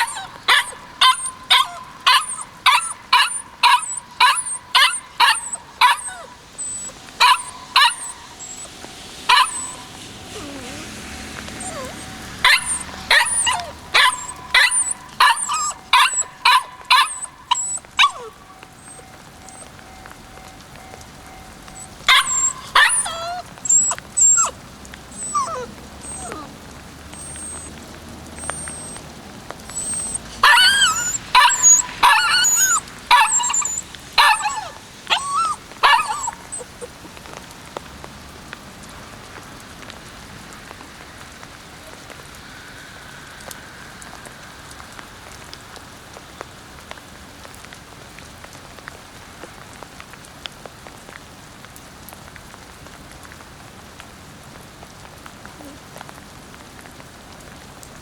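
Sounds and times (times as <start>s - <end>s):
puppy yipping and barking: 0.0s - 19.7s, 21.8s - 27.8s, 28.4s - 29.0s, 29.7s - 37.4s
puppy whining: 0.0s - 19.8s, 21.7s - 27.8s, 28.4s - 37.5s.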